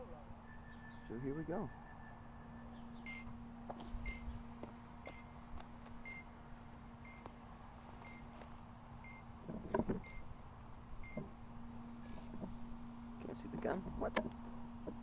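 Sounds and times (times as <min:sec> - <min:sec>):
low electronic hum: 0:00.0 - 0:15.0.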